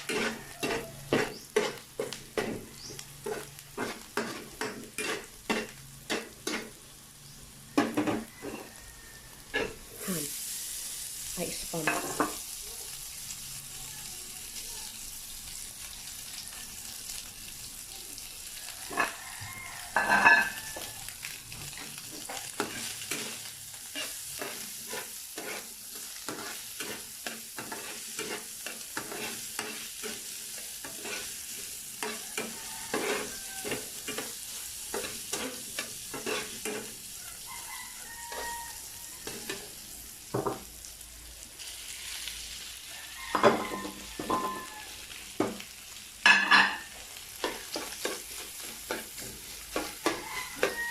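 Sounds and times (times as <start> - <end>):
spatula scraping a pan: 0.0 - 6.8, 7.8 - 11.0, 18.6 - 39.8, 43.3 - 45.6, 46.3 - 50.9
rice sizzling in a pan: 0.0 - 50.9.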